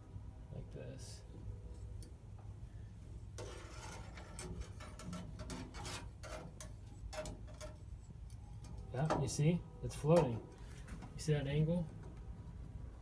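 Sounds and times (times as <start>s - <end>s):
metal scraping and rubbing: 3.4s - 11.2s.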